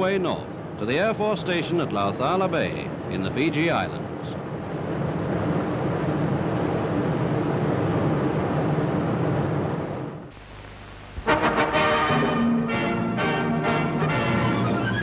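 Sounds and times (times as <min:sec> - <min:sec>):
aircraft engines droning: 0:00.0 - 0:15.0
orchestral music with brass: 0:11.3 - 0:15.0.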